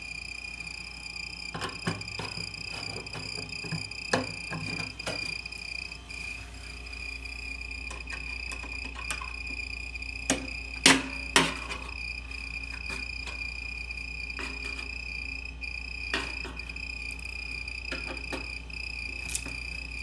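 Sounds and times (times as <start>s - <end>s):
refrigerator high-pitched squeal: 0.0s - 20.0s.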